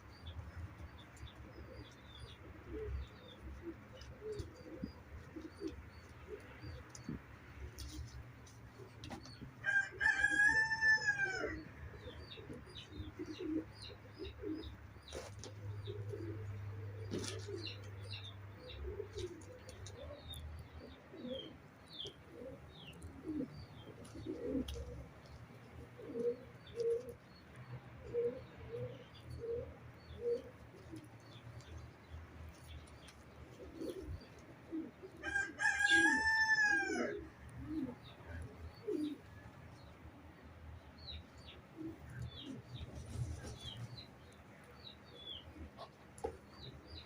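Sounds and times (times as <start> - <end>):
pigeons cooing: 0.9 - 39.9, 41.0 - 47.0
rooster crowing: 9.6 - 11.6, 35.2 - 37.2.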